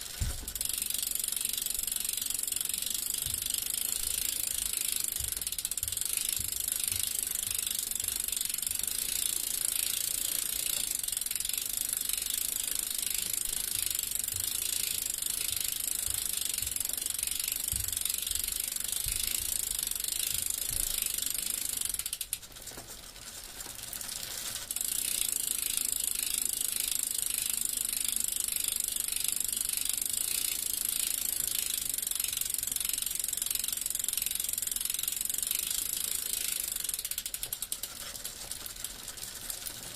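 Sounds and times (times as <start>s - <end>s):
bicycle freewheel clicking: 0.0s - 39.9s.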